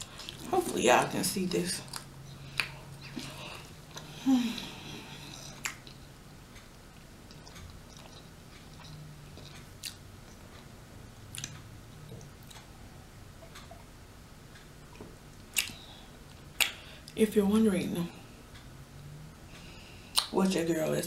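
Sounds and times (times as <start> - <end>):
person chewing food: 0.0 - 0.5, 1.8 - 10.7, 11.3 - 12.7, 14.9 - 17.2, 19.5 - 20.3
wet mouth clicks: 5.3 - 6.0, 11.3 - 11.6, 15.5 - 15.8, 20.1 - 20.4.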